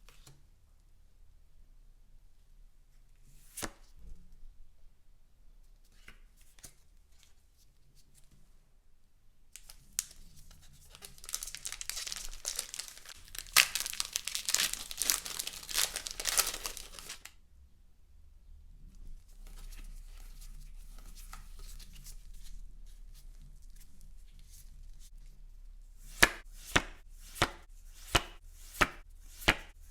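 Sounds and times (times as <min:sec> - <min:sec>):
packaging tearing and crinkling: 0:10.9 - 0:17.3.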